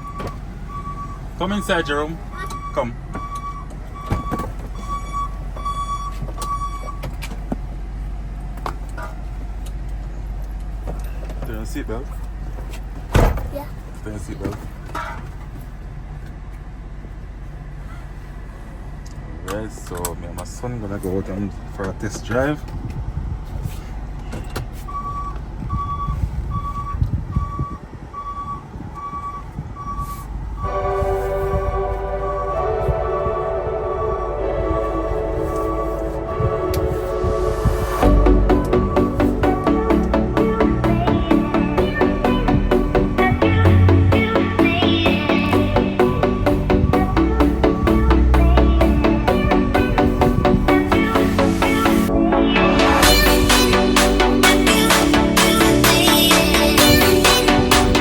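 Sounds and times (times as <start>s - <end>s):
dashboard warning chime beeping: 0.0s - 7.0s, 24.9s - 48.0s
van engine hum: 0.0s - 58.0s
music: 30.7s - 58.0s.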